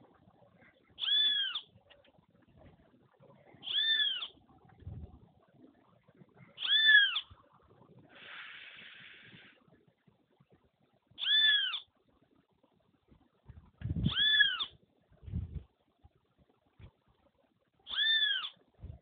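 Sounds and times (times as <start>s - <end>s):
faint hiss: 8.0s - 9.9s.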